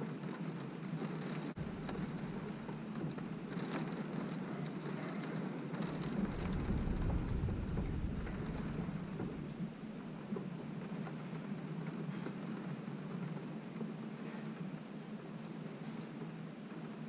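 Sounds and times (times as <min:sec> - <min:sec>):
rain beating on a window: 0:00.0 - 0:17.0
deep low rumble: 0:01.6 - 0:03.8, 0:05.8 - 0:10.2.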